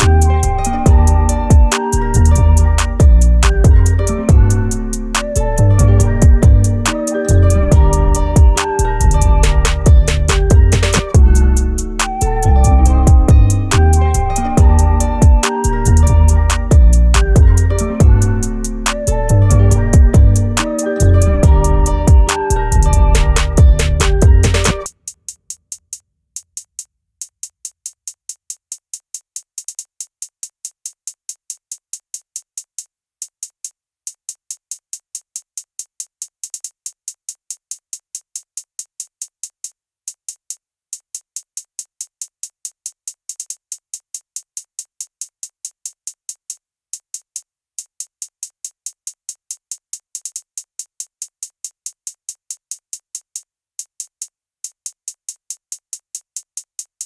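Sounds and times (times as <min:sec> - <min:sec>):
drum machine high ticks: 0:00.0 - 0:25.8, 0:26.6 - 0:39.7, 0:47.2 - 0:53.4.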